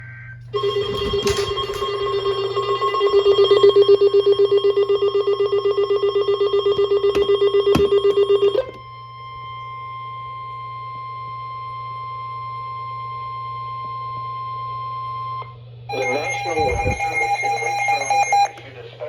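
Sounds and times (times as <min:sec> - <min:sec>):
electronic alarm pulsing rapidly: 0:15.9 - 0:18.6
steady high-pitched attention tone: 0:15.9 - 0:18.6.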